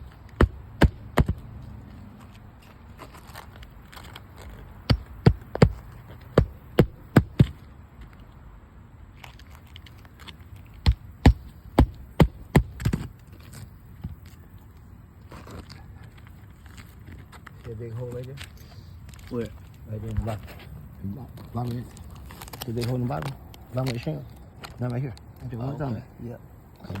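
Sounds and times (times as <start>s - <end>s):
sharp knocks: 0.0s - 1.5s, 4.9s - 7.6s, 10.8s - 13.1s.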